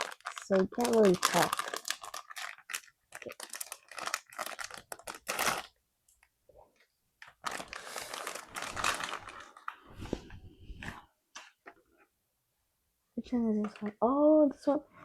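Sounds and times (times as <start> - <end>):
plastic wrapping crinkling and tearing: 0.0 - 5.8, 7.2 - 11.0.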